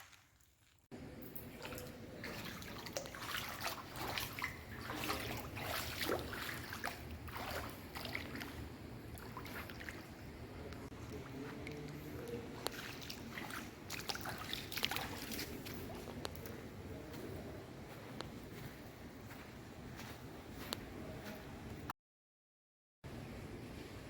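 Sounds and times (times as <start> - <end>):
water sloshing and trickling: 0.0 - 17.9
small splashes: 1.3 - 16.7.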